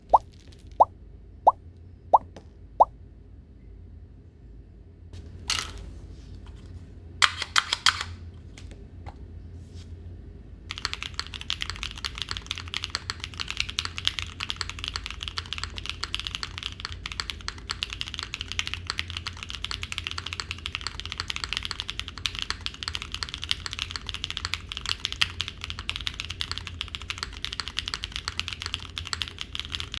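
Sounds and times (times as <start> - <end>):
typing on mechanical keyboard: 10.7 - 30.0.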